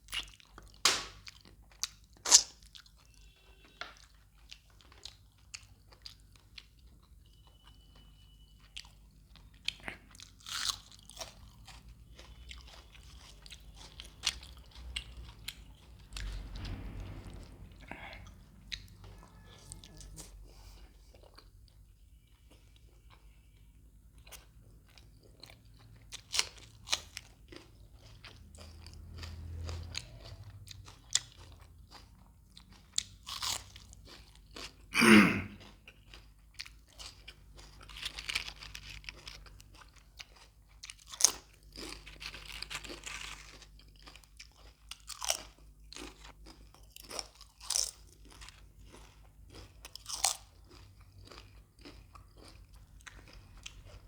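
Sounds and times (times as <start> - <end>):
person chewing crunchy vegetables: 0.0 - 54.0
wet mouth sounds: 2.2 - 2.6.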